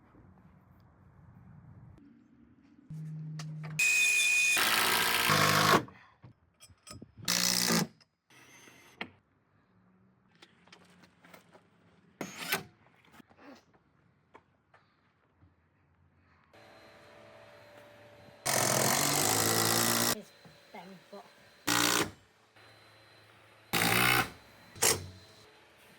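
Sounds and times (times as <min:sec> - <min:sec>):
power tool running: 0:03.8 - 0:05.9, 0:16.6 - 0:25.8.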